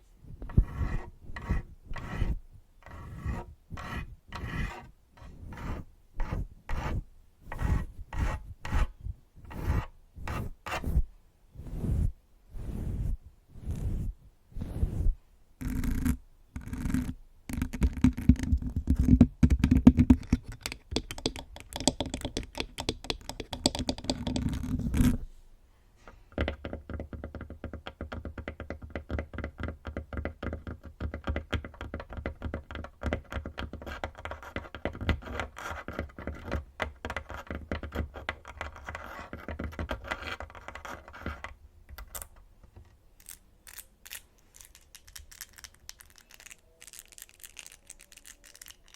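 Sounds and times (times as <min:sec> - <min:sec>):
fingernails scratching on microphone: 0:00.4 - 0:25.3, 0:26.5 - 0:42.2
fingernails tapping on tabletop: 0:17.0 - 0:24.5, 0:26.3 - 0:35.4.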